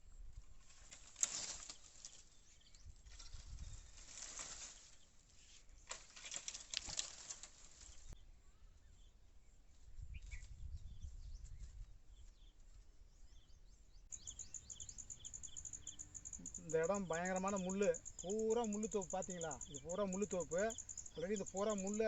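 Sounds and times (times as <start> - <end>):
dry leaves crackling and rustling: 0.6 - 8.2
short bird chirps: 13.3 - 16.8.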